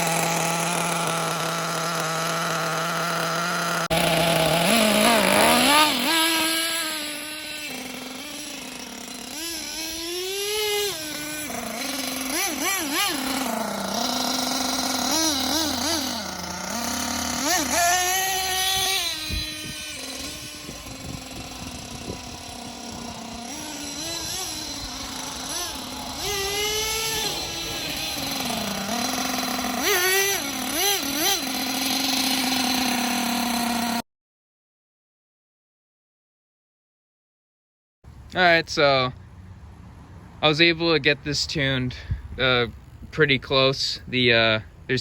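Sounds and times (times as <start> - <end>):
rc truck engine revving: 0.0 - 34.0.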